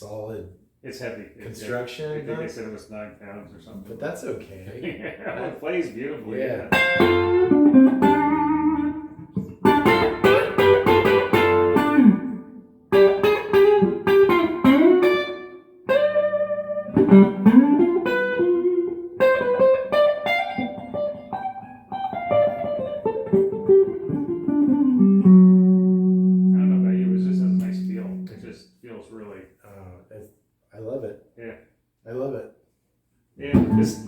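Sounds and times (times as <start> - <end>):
electric guitar melody with bends: 6.7 - 28.4, 33.5 - 34.0.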